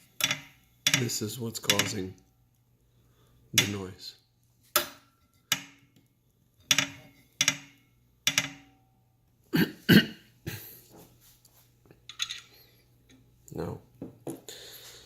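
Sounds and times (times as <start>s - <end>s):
sharp metal clicks and knocks: 0.0s - 2.1s, 4.7s - 8.8s.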